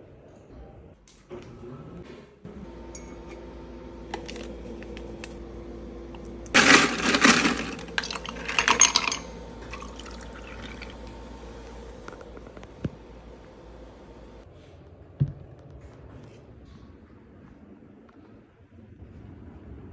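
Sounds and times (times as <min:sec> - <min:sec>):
steady low hum: 0:02.5 - 0:14.4
liquid splashing: 0:06.6 - 0:11.0.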